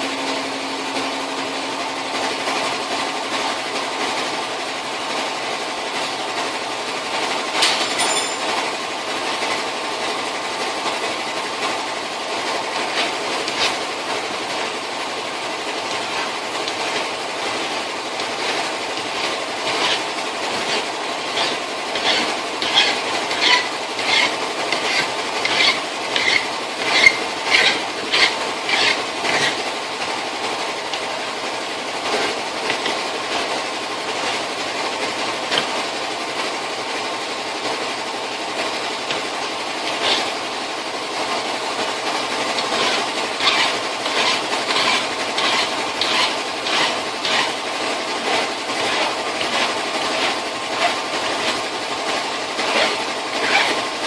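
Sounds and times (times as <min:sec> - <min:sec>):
hand file rasping on steel: 0:12.9 - 0:13.8, 0:18.4 - 0:29.6, 0:39.9 - 0:40.3, 0:42.6 - 0:47.6, 0:48.2 - 0:51.0, 0:52.6 - 0:53.8.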